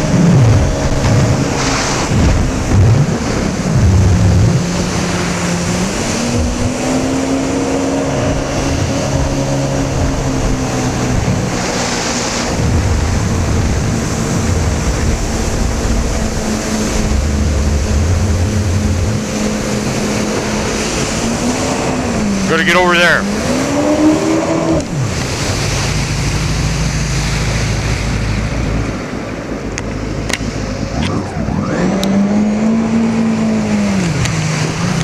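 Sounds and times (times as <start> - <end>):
personal watercraft engine running: 0.0 - 35.0
water rushing along hull: 0.0 - 35.0.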